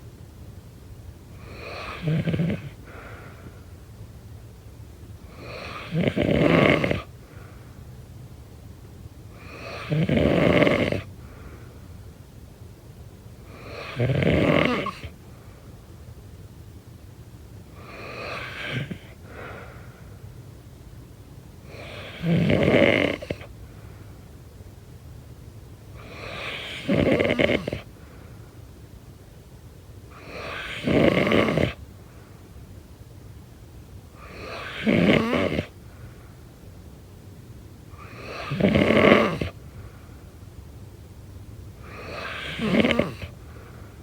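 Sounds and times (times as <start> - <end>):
snoring: 1.4 - 3.2, 5.3 - 7.1, 9.4 - 11.1, 13.5 - 15.2, 17.7 - 19.7, 21.6 - 23.5, 26.0 - 27.9, 30.1 - 31.8, 34.2 - 35.8, 37.9 - 39.6, 41.8 - 43.7.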